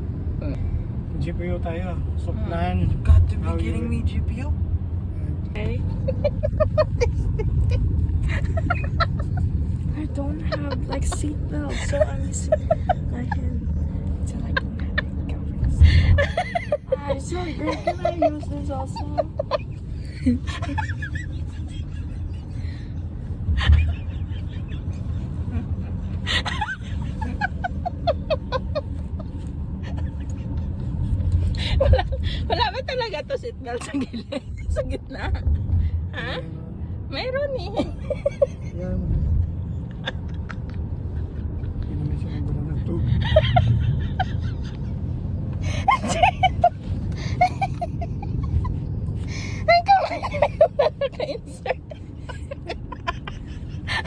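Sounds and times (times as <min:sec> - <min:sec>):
car engine and road noise: 0:00.0 - 0:54.0
voices and giggling: 0:05.6 - 0:22.6, 0:45.6 - 0:54.0.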